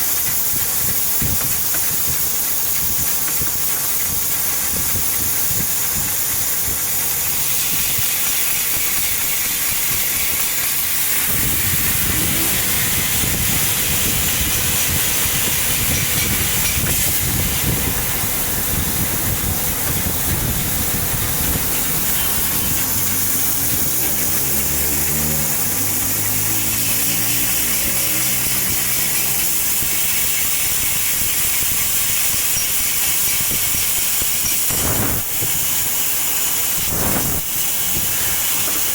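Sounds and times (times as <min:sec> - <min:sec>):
hiss of cutting gas: 0:00.0 - 0:38.9
stepping motor hum: 0:00.0 - 0:38.9
low mechanical rumble: 0:10.9 - 0:27.6.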